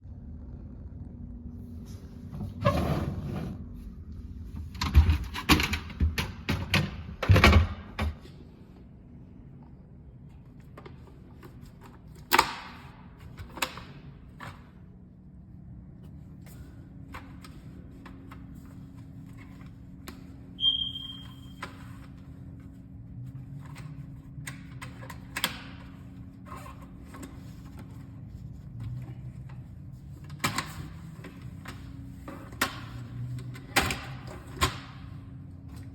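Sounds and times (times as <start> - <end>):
steady low hum: 0.0 - 12.1
refrigerator drawer sliding swish: 1.9 - 3.7
short high electronic beep: 20.6 - 21.6.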